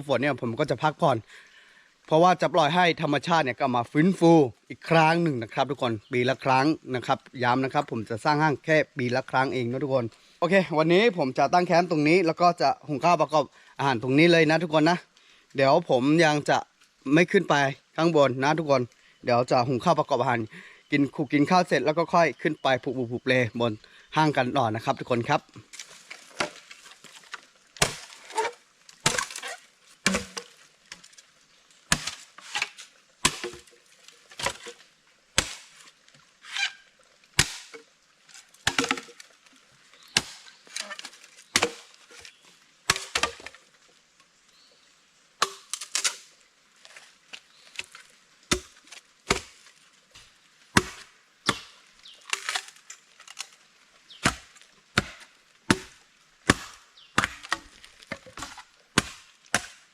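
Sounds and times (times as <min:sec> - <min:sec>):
chopping wood with a blade: 0:25.8 - 0:26.7, 0:27.8 - 0:31.0, 0:31.9 - 0:33.8, 0:34.4 - 0:34.8, 0:35.4 - 0:35.8, 0:37.4 - 0:37.9, 0:38.6 - 0:39.2, 0:40.1 - 0:43.6, 0:45.4 - 0:46.3, 0:47.8 - 0:49.6, 0:50.8 - 0:59.9.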